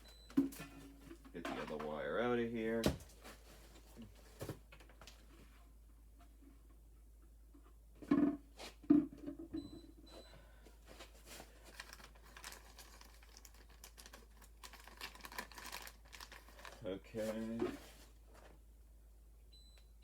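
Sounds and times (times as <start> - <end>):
crinkling of wire caps: 11.3 - 17.4.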